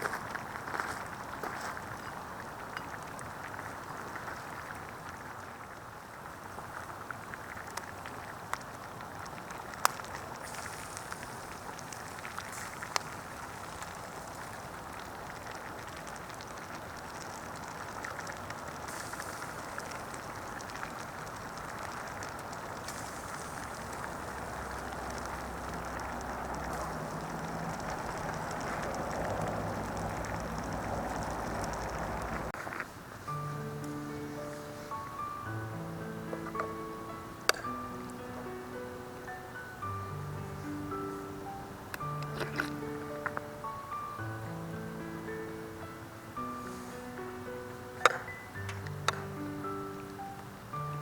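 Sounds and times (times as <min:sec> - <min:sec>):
campfire hissing and popping: 0:00.0 - 0:51.0.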